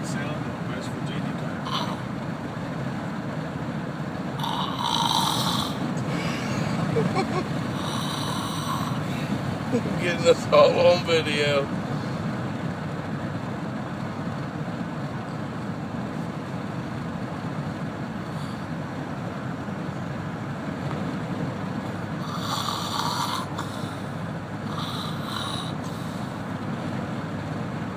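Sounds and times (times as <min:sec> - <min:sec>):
road and engine noise: 0:00.0 - 0:27.9
man snoring: 0:01.6 - 0:02.1, 0:04.4 - 0:06.4, 0:07.7 - 0:09.4, 0:22.2 - 0:26.4.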